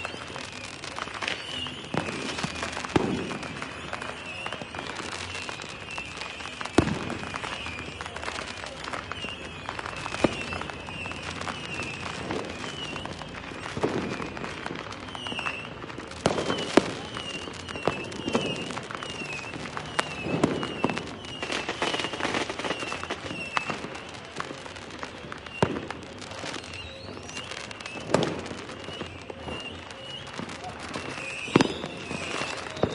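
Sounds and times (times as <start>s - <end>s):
firecrackers bangs and crackles: 0.0s - 32.9s
deep firework booms: 1.8s - 3.9s, 6.7s - 8.5s, 9.1s - 15.4s.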